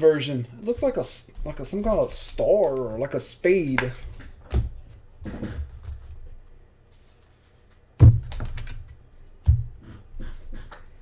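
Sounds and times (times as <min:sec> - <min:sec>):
sharp knocks with low thud: 0:08.0 - 0:08.4, 0:09.5 - 0:09.8.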